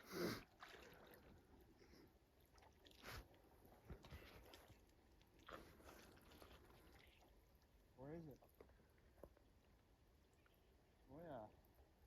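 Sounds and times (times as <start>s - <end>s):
person wading through water: 0.4s - 1.8s, 2.4s - 7.7s.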